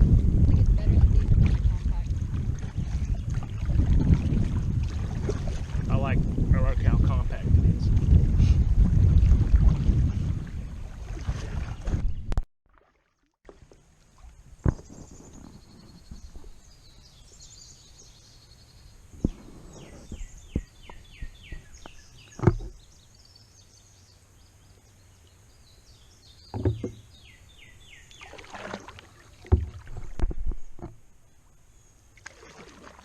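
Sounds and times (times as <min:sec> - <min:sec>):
water swish: 0:00.0 - 0:16.8, 0:28.0 - 0:31.2, 0:32.1 - 0:33.0
songbird singing: 0:00.4 - 0:04.4, 0:13.7 - 0:32.7
paddle knocking on plastic hull: 0:20.5 - 0:22.8, 0:26.5 - 0:27.0, 0:29.4 - 0:31.0.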